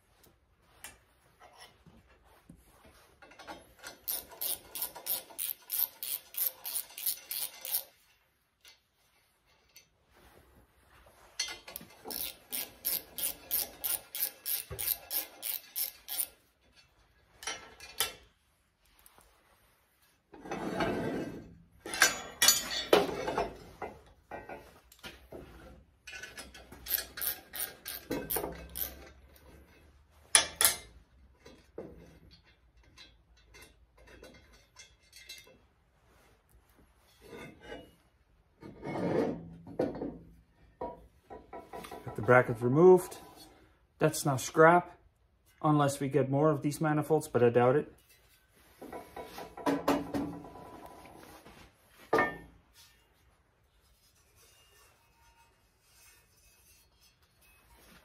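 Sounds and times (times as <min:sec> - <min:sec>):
metal scraping and handling: 0:00.2 - 0:43.6, 0:48.0 - 0:58.0
ratchet wrench clicking: 0:04.0 - 0:08.0, 0:12.0 - 0:16.4, 0:26.8 - 0:29.1.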